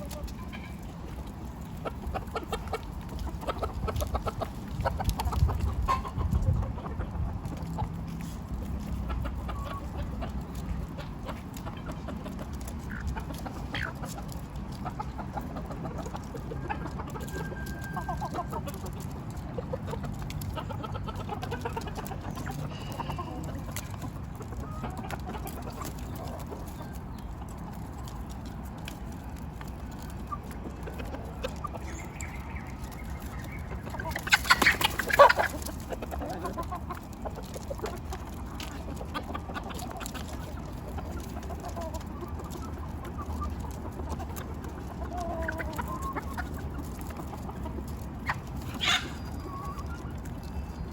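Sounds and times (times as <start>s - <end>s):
chickens clucking: 0.0s - 50.9s
chicken squawk: 31.7s - 36.8s, 48.2s - 50.0s.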